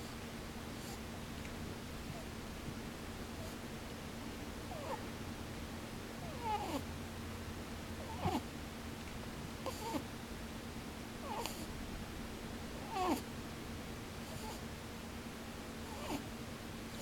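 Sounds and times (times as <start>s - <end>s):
rabbit snoring squeakily: 0.8s - 1.0s, 3.4s - 3.6s, 4.7s - 5.0s, 6.2s - 6.9s, 8.0s - 8.5s, 9.6s - 10.1s, 11.2s - 11.7s, 12.8s - 13.3s, 14.2s - 14.7s, 15.9s - 16.3s.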